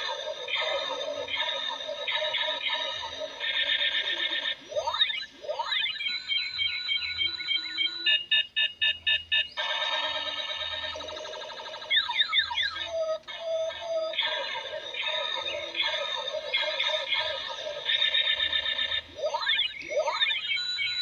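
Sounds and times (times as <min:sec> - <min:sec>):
warbling alarm tones: 0:00.0 - 0:08.2, 0:09.6 - 0:21.0.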